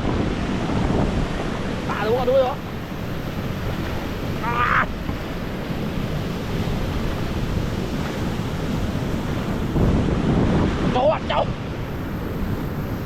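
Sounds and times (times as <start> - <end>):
waterfall rushing: 0.0 - 13.0
wind buffeting microphone: 0.0 - 13.0
person calling out: 1.9 - 2.5, 4.4 - 4.9.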